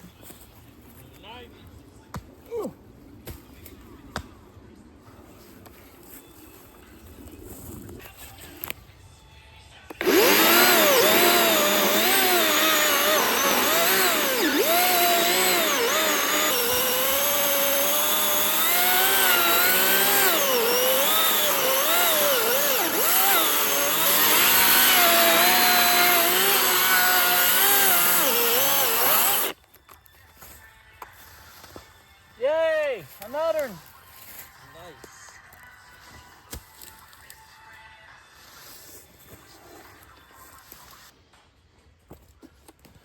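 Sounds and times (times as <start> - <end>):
chainsaw cutting wood: 9.9 - 29.6.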